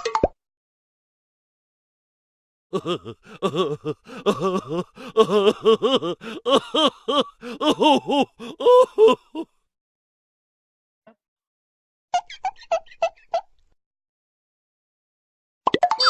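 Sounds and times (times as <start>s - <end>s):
comic vocal syllables: 2.8s - 9.4s.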